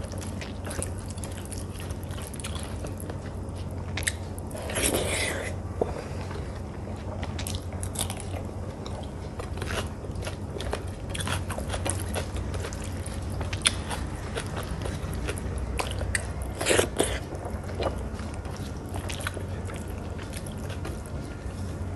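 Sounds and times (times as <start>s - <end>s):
chewing: 0.0s - 21.9s
steady low hum: 0.0s - 21.9s.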